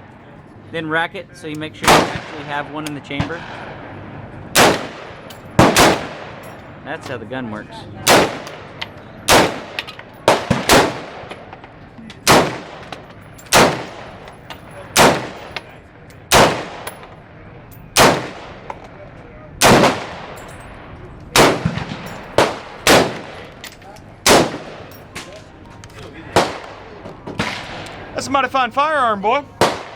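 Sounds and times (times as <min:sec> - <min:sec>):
rifle shots with echo: 0:01.8 - 0:06.8, 0:08.0 - 0:17.2, 0:17.9 - 0:19.0, 0:19.6 - 0:23.6, 0:24.2 - 0:25.3, 0:26.4 - 0:28.1, 0:29.6 - 0:29.9.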